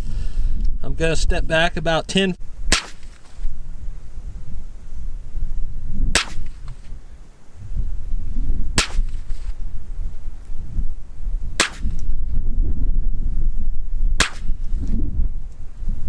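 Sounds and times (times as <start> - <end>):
rifle shots: 2.7 - 3.5, 6.2 - 6.8, 8.8 - 9.5, 11.6 - 12.1, 14.2 - 14.8.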